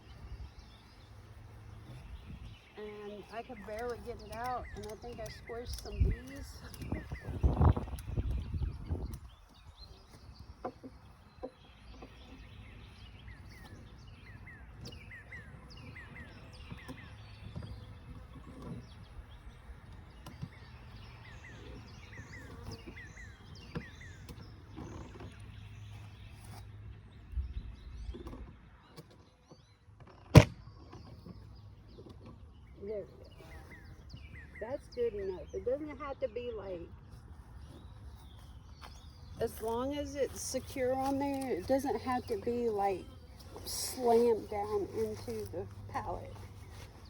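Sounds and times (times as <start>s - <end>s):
small birds chirping: 0.0s - 47.0s
scattered clicks: 3.5s - 7.2s.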